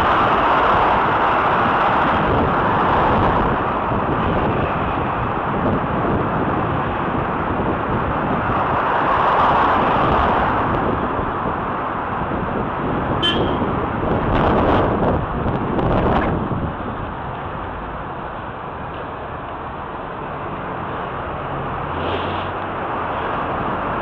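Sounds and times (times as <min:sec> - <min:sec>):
wind on microphone: 0:00.0 - 0:17.8
cars passing: 0:00.0 - 0:24.0.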